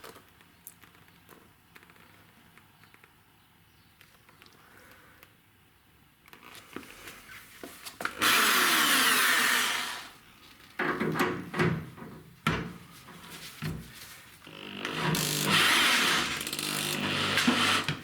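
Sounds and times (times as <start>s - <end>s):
power tool running: 8.2s - 10.1s, 14.5s - 18.0s.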